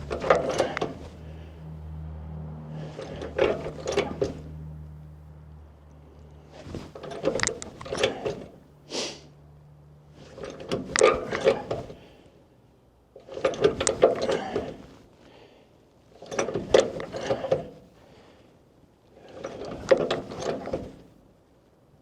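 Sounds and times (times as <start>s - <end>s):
metallic clicking and rattling: 0.0s - 1.2s, 2.9s - 4.4s, 10.2s - 12.0s
low steady hum: 0.0s - 22.0s
short hiss: 8.9s - 9.3s.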